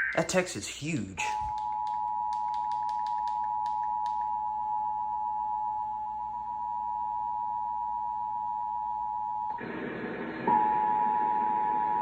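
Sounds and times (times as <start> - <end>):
noisy static: 0.0 - 4.2, 9.6 - 12.0.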